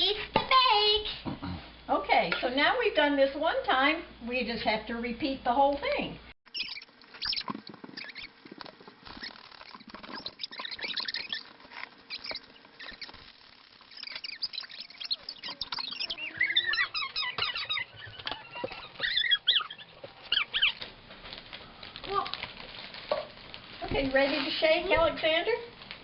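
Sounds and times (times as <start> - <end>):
short high squeaks: 6.5 - 8.4, 9.0 - 20.8
plastic bag rustling: 6.9 - 26.0.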